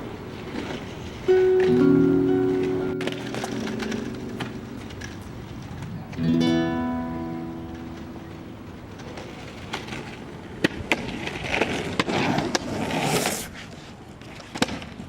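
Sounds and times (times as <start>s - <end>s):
rough scraping rush: 8.9s - 13.9s.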